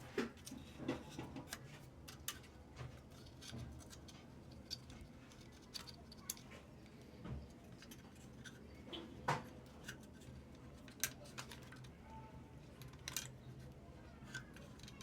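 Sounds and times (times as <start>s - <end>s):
clicks of small hard parts: 14.2s - 15.0s.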